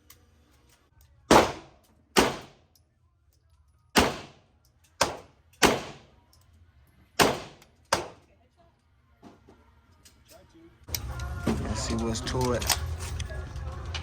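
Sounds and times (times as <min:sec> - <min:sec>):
gunshots with echo: 0:01.3 - 0:02.6, 0:04.0 - 0:04.4, 0:05.0 - 0:06.1, 0:07.2 - 0:08.2.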